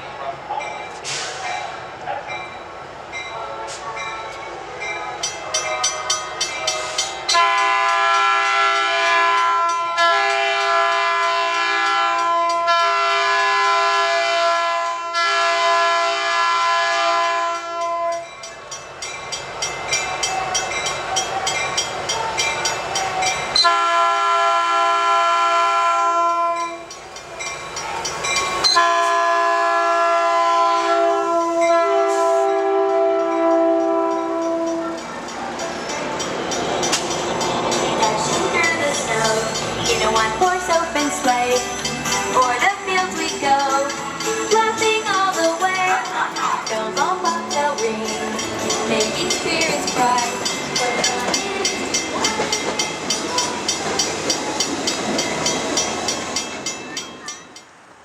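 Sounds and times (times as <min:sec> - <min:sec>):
rolling train noise: 0:00.0 - 0:58.0
locomotive air horn blasts: 0:07.3 - 0:18.3, 0:23.6 - 0:26.8, 0:28.7 - 0:34.9.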